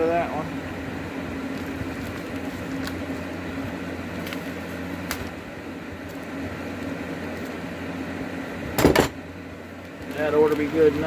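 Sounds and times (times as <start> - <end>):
electric fan humming: 0.0 - 11.0
letter opener cutting package: 1.5 - 3.2.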